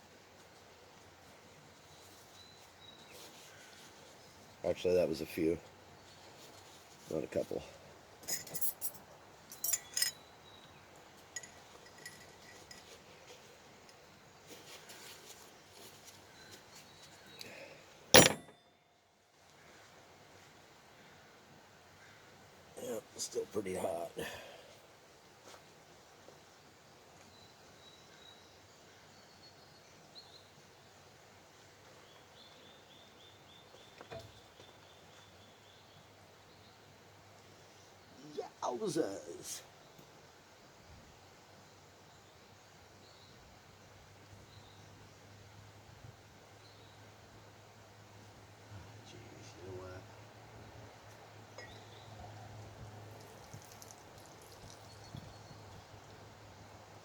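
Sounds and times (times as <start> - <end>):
camp cookware clinking: 8.2 - 10.2, 11.3 - 13.0, 18.2 - 18.7, 51.6 - 52.0.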